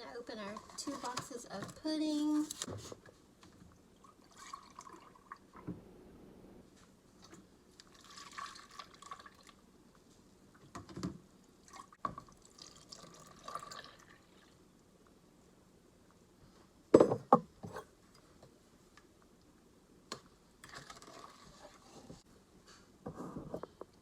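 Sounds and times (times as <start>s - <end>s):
pudding pouring into bowl: 4.0s - 5.6s, 7.8s - 9.6s, 11.7s - 14.6s, 20.6s - 21.9s.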